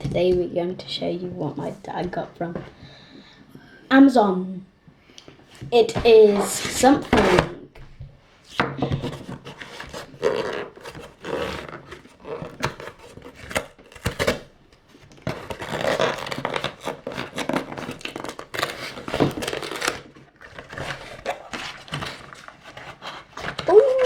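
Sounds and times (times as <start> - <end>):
packaging tearing and crinkling: 9.1 - 24.0.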